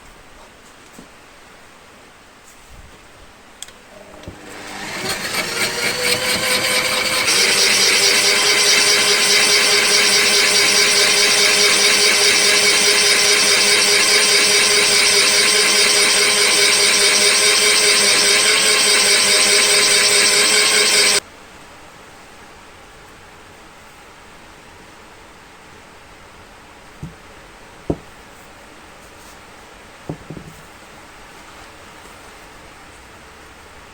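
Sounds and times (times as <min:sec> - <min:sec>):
power tool motor whine: 0:03.8 - 0:21.2.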